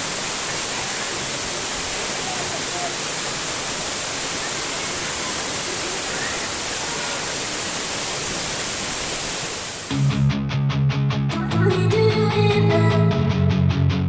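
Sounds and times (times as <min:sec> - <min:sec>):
waterfall rushing: 0:00.0 - 0:10.1.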